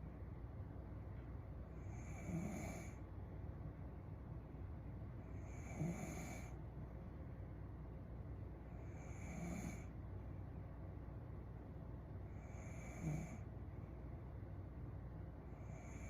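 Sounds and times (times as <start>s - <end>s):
woman snoring: 1.9s - 3.0s, 5.4s - 6.5s, 9.0s - 9.9s, 12.4s - 13.4s.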